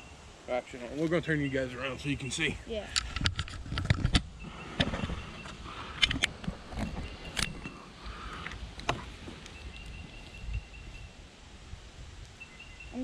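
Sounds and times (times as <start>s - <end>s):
wind rumble: 2.0s - 12.9s
camera handling clicks and knocks: 3.0s - 4.3s, 6.0s - 7.7s.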